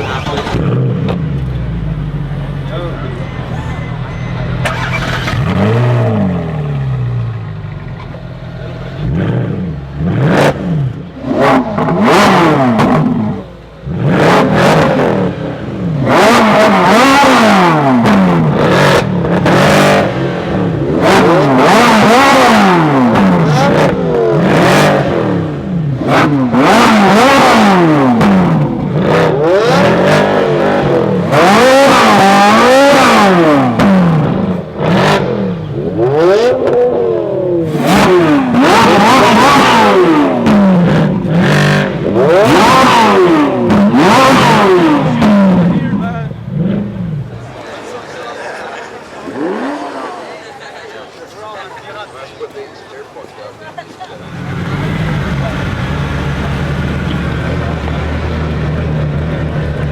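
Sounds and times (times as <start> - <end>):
car engine idling: 0.0 - 19.5, 50.4 - 59.9
car engines revving: 0.0 - 59.9.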